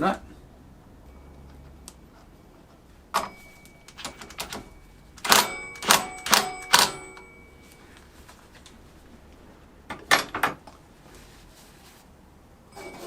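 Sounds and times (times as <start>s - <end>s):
ringing metallic clanks: 3.1s - 7.9s, 12.7s - 13.0s
metal parts clinking: 3.2s - 7.3s.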